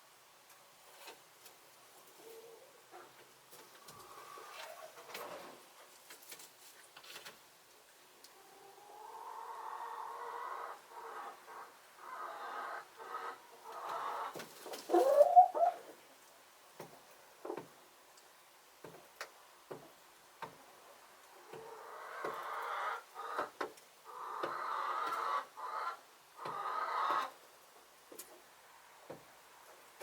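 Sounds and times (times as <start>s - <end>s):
hens calling softly: 8.3s - 16.0s.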